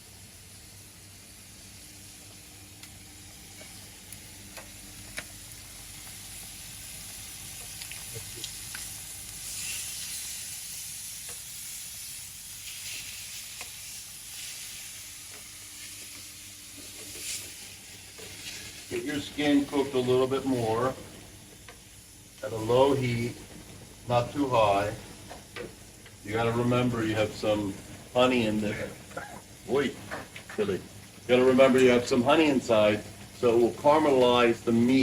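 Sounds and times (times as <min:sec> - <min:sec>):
chicken sizzling in a grill pan: 0:00.0 - 0:35.0
small pops and spits: 0:07.6 - 0:08.9.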